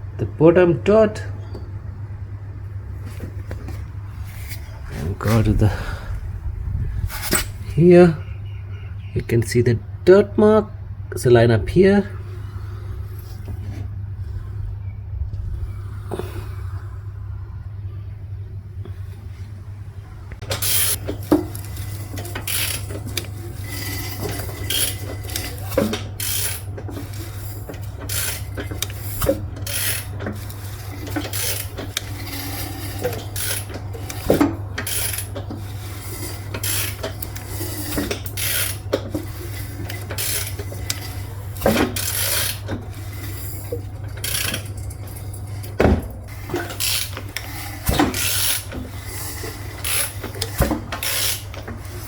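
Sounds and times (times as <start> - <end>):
low hum: 1.1 - 9.2, 12.0 - 25.8
metal tools clinking and scraping: 20.5 - 52.0.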